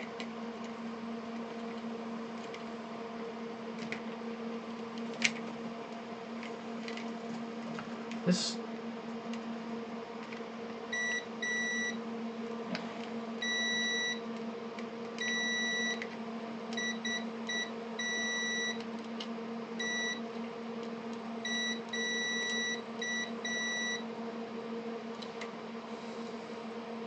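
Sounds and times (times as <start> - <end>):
low electrical hum: 0.0 - 27.0
multimeter beeps: 10.9 - 12.0, 13.4 - 14.2, 15.2 - 16.0, 16.8 - 18.8, 19.8 - 20.2, 21.5 - 24.0.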